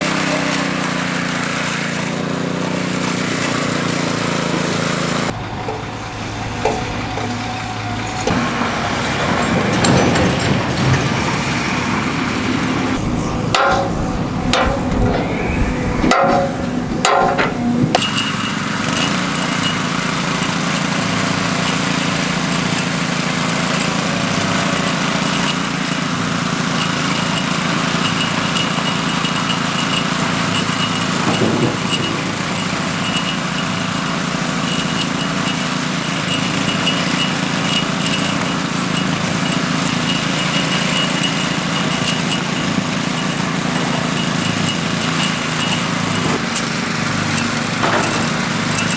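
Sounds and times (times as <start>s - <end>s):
small petrol engine running: 0.0s - 48.9s
sharp knocks: 5.4s - 18.3s.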